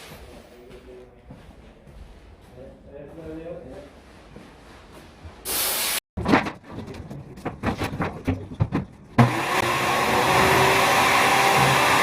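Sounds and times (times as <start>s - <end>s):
knocks and clatters: 6.2s - 9.2s.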